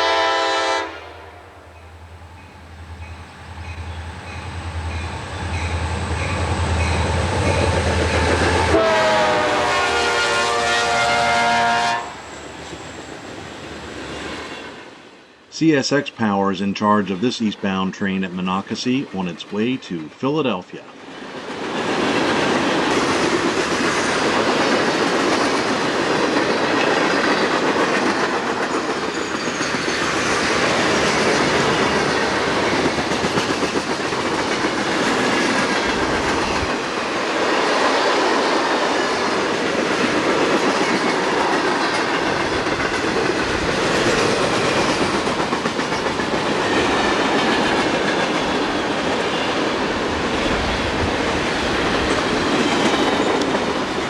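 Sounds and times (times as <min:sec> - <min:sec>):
freight train wheels on rails: 0:00.0 - 0:15.3, 0:18.6 - 0:54.0.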